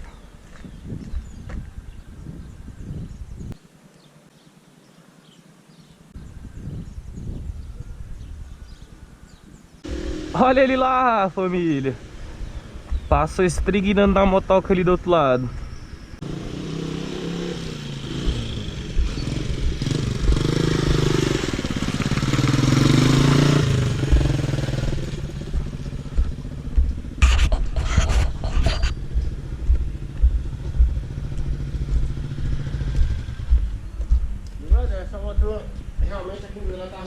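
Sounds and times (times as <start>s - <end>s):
motorcycle engine revving: 9.8s - 13.2s, 15.8s - 36.0s
low rumble: 9.8s - 14.3s, 17.9s - 37.0s.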